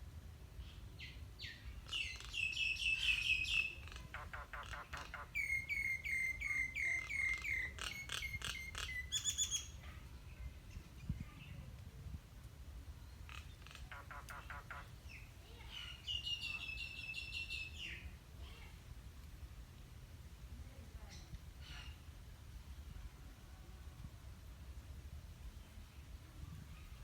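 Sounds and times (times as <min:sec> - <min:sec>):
songbirds chirping: 0:00.5 - 0:11.6, 0:12.4 - 0:18.3
down-slurred bird notes: 0:13.8 - 0:14.9.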